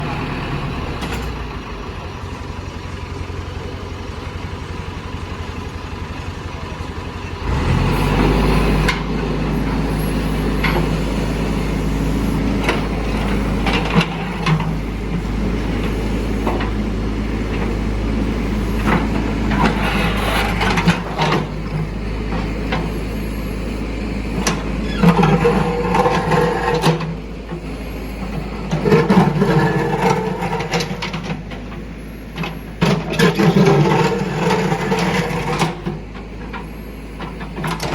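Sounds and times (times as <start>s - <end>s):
diesel engine idling and revving: 0.0s - 37.9s
bucket scraping road surface: 7.4s - 17.8s, 18.7s - 21.8s, 24.5s - 27.3s, 28.4s - 31.9s, 32.5s - 36.7s.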